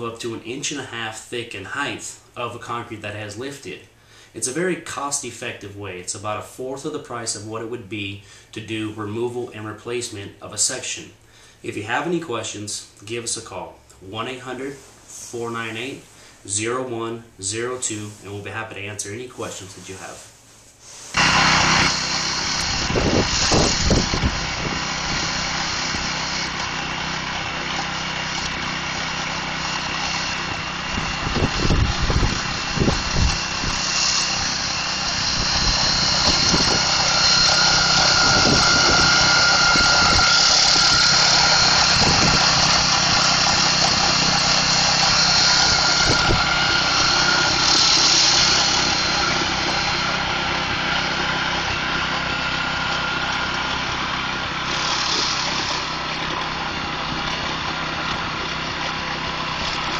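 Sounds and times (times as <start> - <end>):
grinder cutting concrete: 21.1 - 59.9
small gasoline engine running: 21.2 - 59.9.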